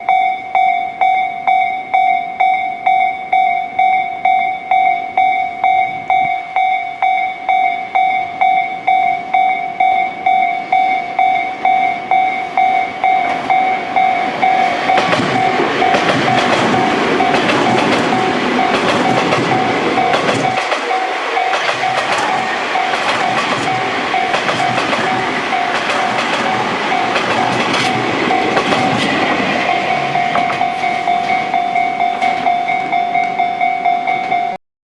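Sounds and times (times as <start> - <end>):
level-crossing warning bell ringing: 0.0 - 34.6
train wheels rumbling and clacking: 11.5 - 34.6.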